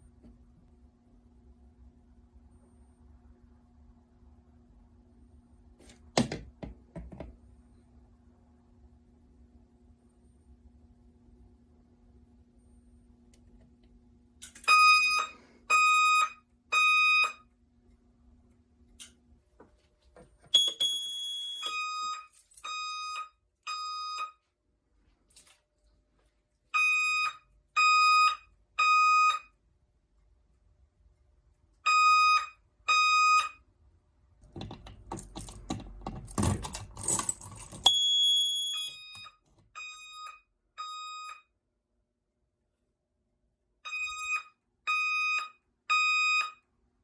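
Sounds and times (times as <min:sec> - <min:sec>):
fire alarm pulsing tones: 0:20.6 - 0:24.4
handling or clattering noise: 0:34.5 - 0:37.9.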